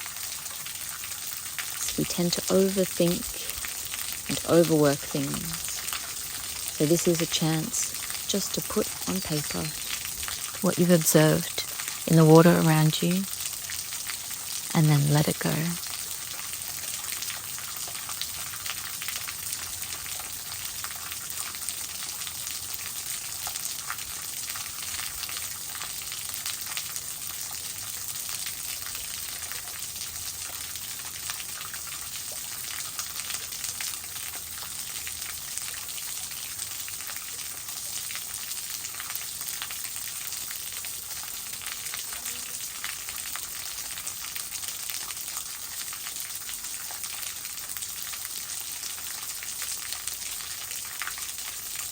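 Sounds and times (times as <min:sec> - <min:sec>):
waterfall splashing: 0:01.7 - 0:13.6.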